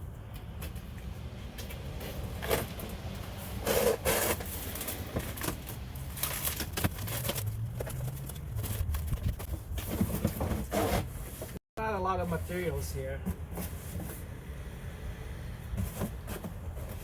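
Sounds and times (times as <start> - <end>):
cardboard packaging rustling: 2.0 - 11.6.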